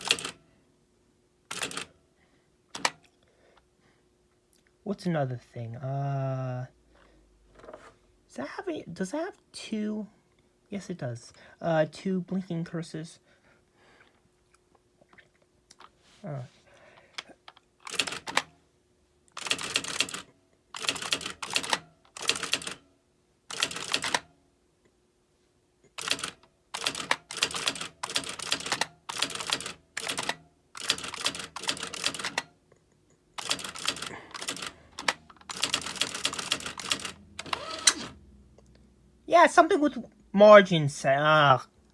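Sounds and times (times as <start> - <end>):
electronic typewriter typing: 0.0 - 0.4, 1.5 - 1.9, 2.8 - 3.0, 17.8 - 18.5, 19.4 - 22.8, 23.5 - 24.3, 26.0 - 32.5, 33.4 - 38.2.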